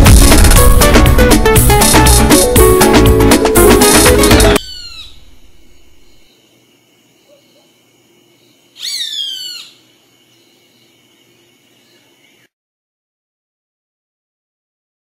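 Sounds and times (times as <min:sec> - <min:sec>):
salsa music: 0:00.0 - 0:04.7
whistled bird-like chirps: 0:04.6 - 0:06.3, 0:08.8 - 0:09.8.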